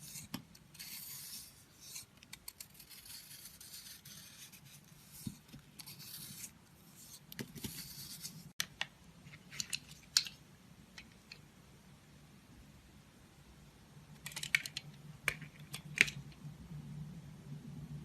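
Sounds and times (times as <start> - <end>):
blade scraping soap: 0.0 - 5.2.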